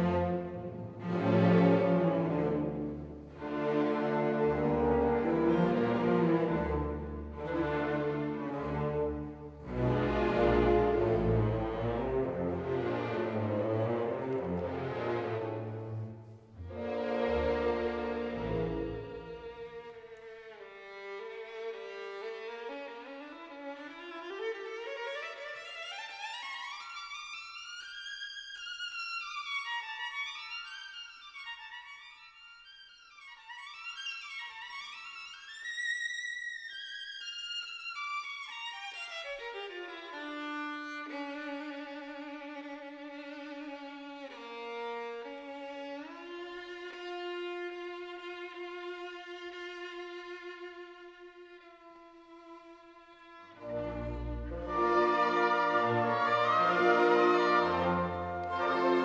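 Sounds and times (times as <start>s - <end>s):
bowed string melody with vibrato: 53.6s - 59.0s.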